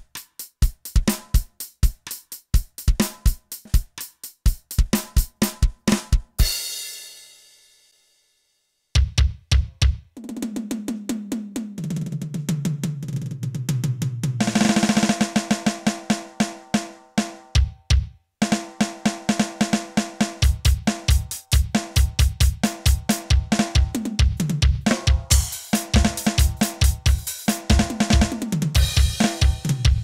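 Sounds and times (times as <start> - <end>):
electronic drum beat: 0.0 - 6.7, 9.0 - 10.2, 13.6 - 30.0
tom fill and drum roll: 9.0 - 30.0.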